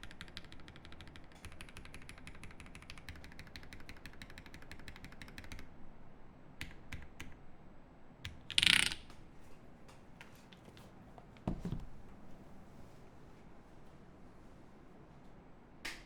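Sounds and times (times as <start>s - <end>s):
mechanical keyboard typing: 0.0s - 5.6s
dull thump: 11.4s - 12.1s.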